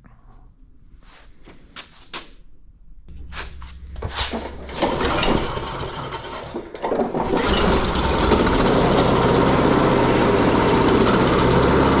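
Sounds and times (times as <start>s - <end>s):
lawn mower engine running: 3.3s - 12.0s.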